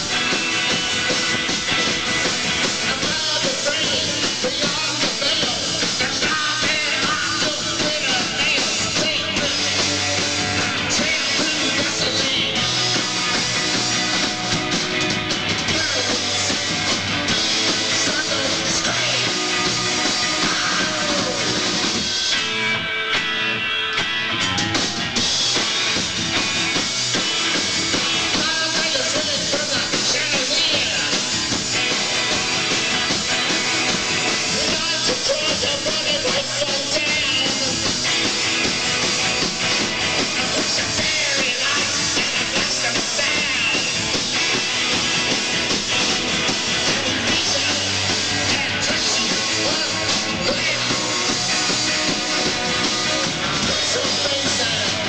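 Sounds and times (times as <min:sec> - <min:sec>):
rock band playing live: 0:00.0 - 0:55.0
person singing: 0:02.8 - 0:12.9, 0:15.6 - 0:16.7, 0:17.8 - 0:21.8, 0:28.2 - 0:31.3, 0:34.3 - 0:38.0, 0:40.2 - 0:44.2, 0:46.7 - 0:55.0.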